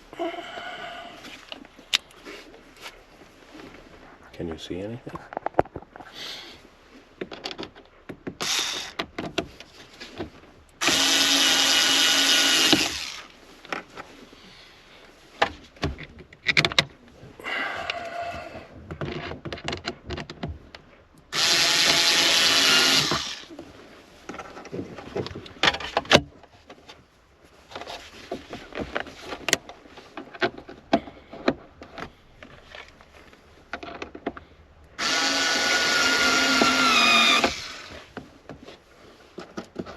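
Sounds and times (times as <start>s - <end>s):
power drill running: 8.4s - 8.9s, 10.8s - 13.3s, 21.3s - 23.5s, 35.0s - 38.0s.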